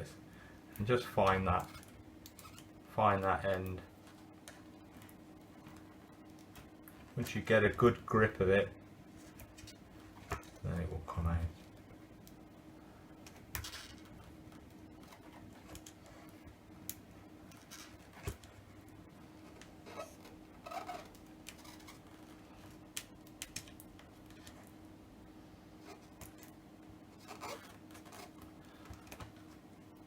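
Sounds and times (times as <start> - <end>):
steady low hum: 0.0 - 30.0
fingers and tool scratching: 19.8 - 22.2, 27.1 - 28.4.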